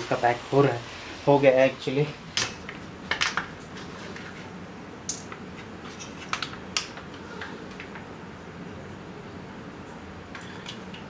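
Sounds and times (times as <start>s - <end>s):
small objects clicking and tapping: 2.4s - 3.6s, 5.1s - 8.0s.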